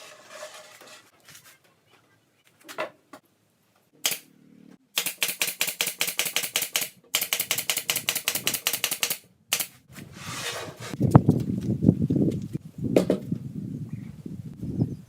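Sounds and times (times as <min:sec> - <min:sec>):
mechanical ratcheting clicks: 0:05.0 - 0:09.7.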